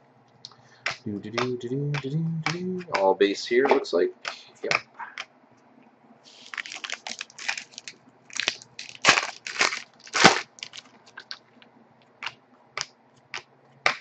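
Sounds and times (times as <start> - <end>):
cards snapping and clicking: 0.8 - 3.1, 12.2 - 14.0
trading cards rustling: 6.3 - 11.5.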